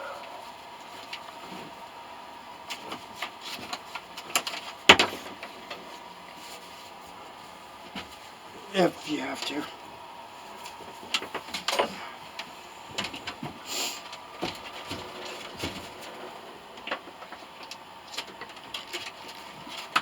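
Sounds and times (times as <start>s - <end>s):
faint high hum: 0.0s - 18.8s
hard objects knocking and scraping: 12.9s - 20.0s.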